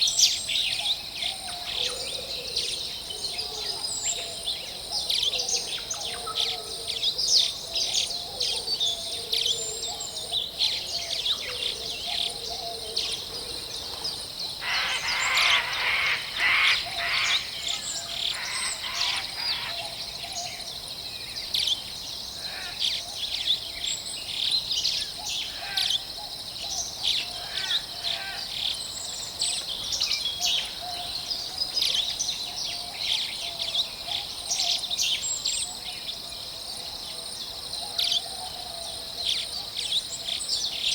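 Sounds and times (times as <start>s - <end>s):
birds chirping and calling: 5.0s - 20.6s.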